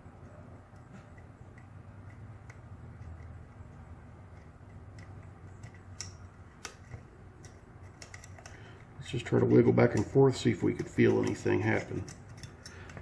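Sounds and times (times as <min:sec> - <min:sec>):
steady low hum: 0:00.0 - 0:13.0
lock pick metallic clicks: 0:04.2 - 0:08.6.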